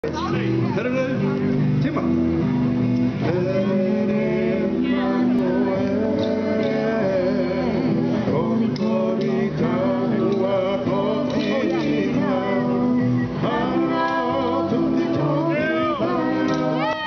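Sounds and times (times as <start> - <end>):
guitar accompaniment: 0.0 - 17.0
people singing: 3.2 - 17.0.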